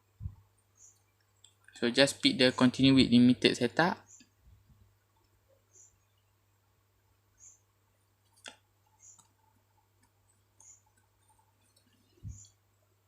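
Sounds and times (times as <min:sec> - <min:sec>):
computer mouse click: 0:08.4 - 0:09.4.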